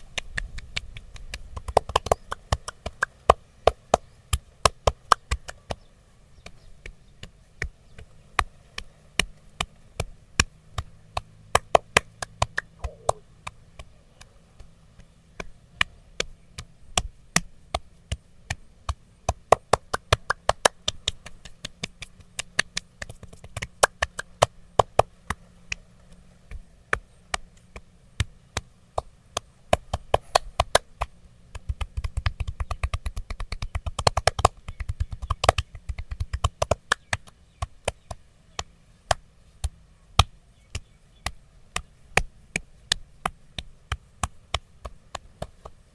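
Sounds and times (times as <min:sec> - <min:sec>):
massage taps and slaps on body: 0:00.2 - 0:05.8, 0:06.4 - 0:45.8.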